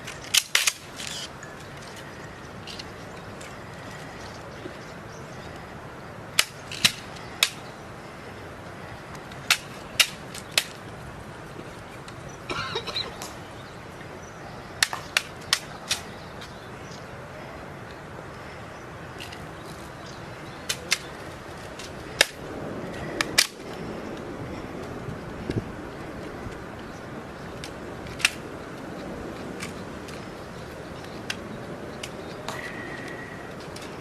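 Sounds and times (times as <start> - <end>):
rifle rattle: 0.0 - 2.8
rifles clicking and slapping: 0.0 - 4.2, 9.1 - 10.9, 14.8 - 16.6, 20.6 - 22.4, 23.0 - 23.8, 27.6 - 34.0
background hiss: 0.0 - 34.0.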